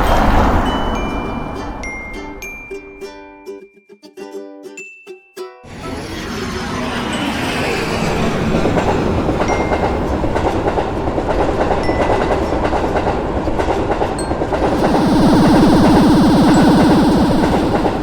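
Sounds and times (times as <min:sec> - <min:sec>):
train rumbling on track: 0:00.0 - 0:03.0, 0:05.7 - 0:18.0.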